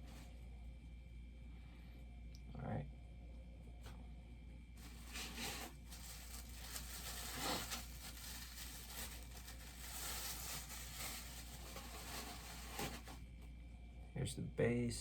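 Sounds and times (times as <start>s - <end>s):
packaging rustling and crinkling: 4.8s - 13.2s
loud scrape: 6.8s - 8.2s.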